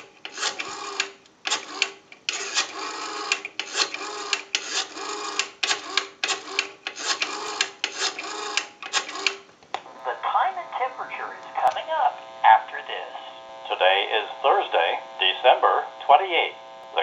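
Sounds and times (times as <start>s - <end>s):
rotary dial whirring and clicking: 0.0s - 10.0s, 16.0s - 17.0s.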